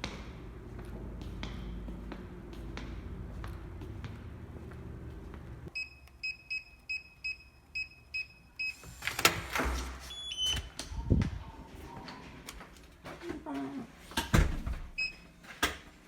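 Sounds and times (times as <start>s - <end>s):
keypad beeps: 5.8s - 8.8s.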